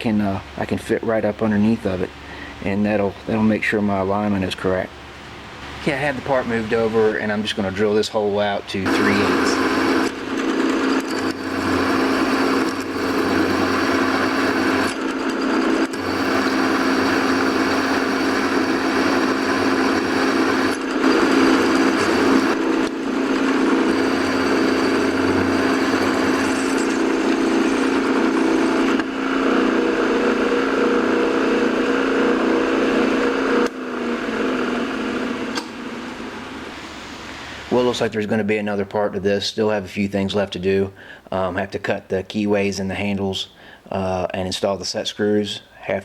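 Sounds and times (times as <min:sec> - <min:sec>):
milling machine spindle running: 0:08.9 - 0:35.5.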